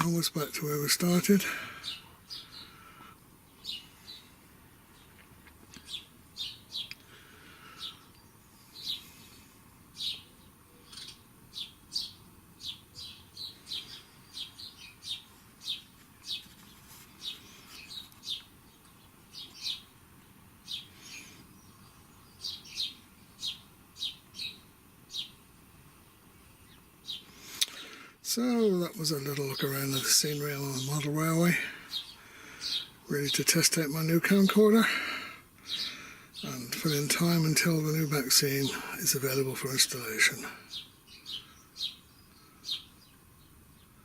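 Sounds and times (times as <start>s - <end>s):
small bird chirping: 3.4s - 7.0s, 7.7s - 20.0s, 20.6s - 25.4s, 26.5s - 28.0s, 29.3s - 33.2s, 35.6s - 38.6s, 39.6s - 44.0s.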